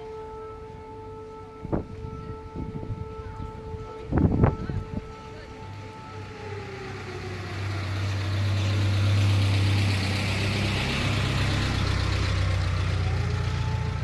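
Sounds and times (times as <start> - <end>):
faint siren tone: 0.0 - 14.0
vehicle engine humming: 0.0 - 14.0.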